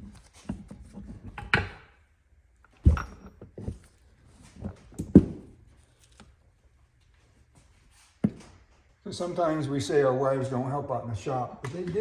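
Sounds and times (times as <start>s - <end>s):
metal parts knocking and clunking: 2.7s - 4.0s.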